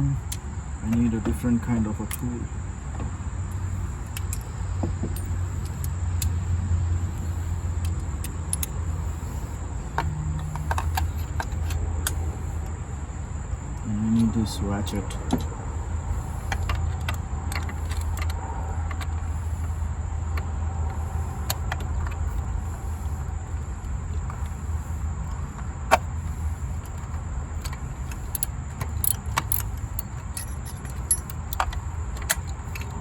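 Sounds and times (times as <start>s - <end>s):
steady low hum: 0.0s - 33.0s
ratchet and socket clicking: 3.5s - 12.8s, 16.2s - 33.0s.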